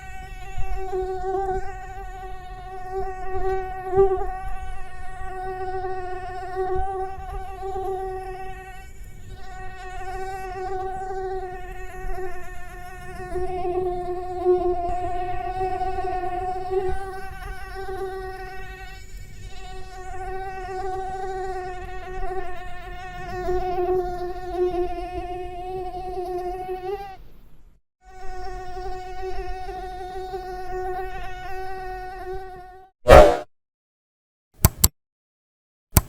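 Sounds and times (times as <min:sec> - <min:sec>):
loud burst: 0:33.1 - 0:33.4.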